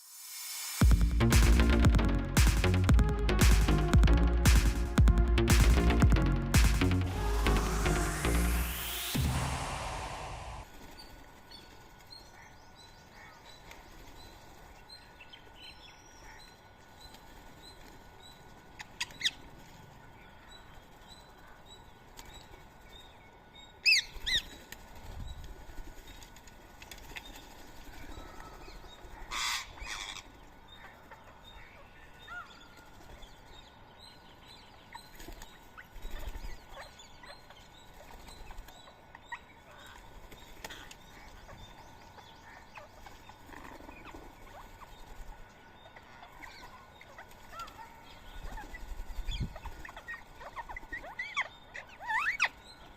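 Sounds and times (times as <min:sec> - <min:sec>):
parakeets squawking: 0:29.3 - 0:30.2, 0:49.5 - 0:52.5.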